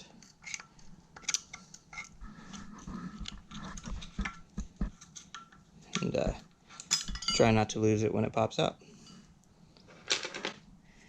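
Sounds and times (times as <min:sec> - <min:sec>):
metal tool clicking and scraping: 0:00.2 - 0:02.2
steel clinking on steel: 0:06.8 - 0:07.6.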